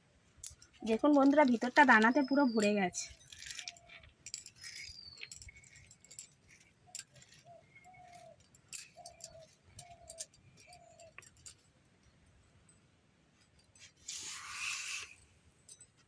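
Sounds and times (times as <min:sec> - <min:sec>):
high falling bird chirp: 0:01.0 - 0:11.2
bird low calls: 0:03.4 - 0:11.2.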